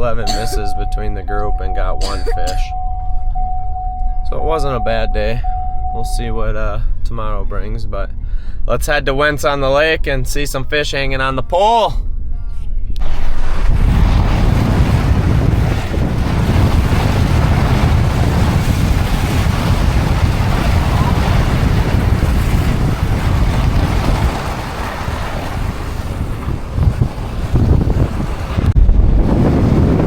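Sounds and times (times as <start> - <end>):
wind buffeting microphone: 12.8 - 30.0.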